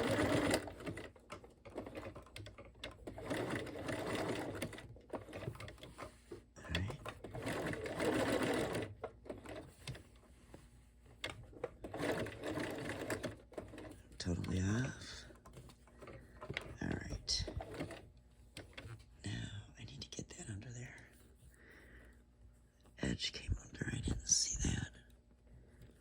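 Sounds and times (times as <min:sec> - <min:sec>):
sewing machine stitching: 0:00.0 - 0:06.1, 0:06.7 - 0:10.0, 0:11.2 - 0:18.9.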